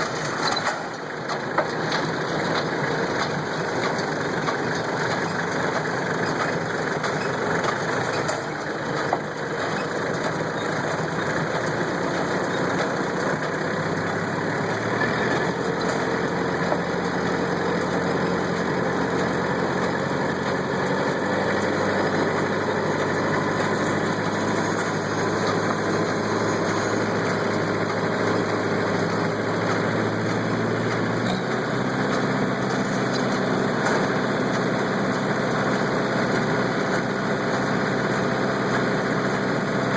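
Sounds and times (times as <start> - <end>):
hay baler working: 0.0 - 39.9
tractor diesel engine under load: 0.0 - 39.9.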